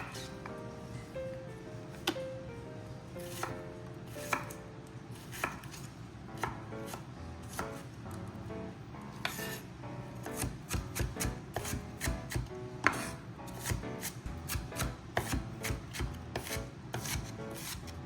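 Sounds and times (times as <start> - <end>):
knife chopping on cutting board: 0.0 - 0.3, 3.2 - 4.6, 5.2 - 7.8, 9.2 - 9.6, 10.2 - 18.0.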